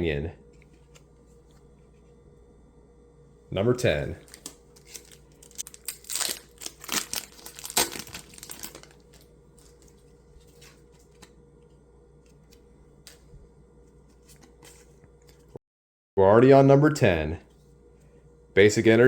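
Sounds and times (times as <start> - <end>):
foil wrapper tearing and crinkling: 4.2 - 9.9.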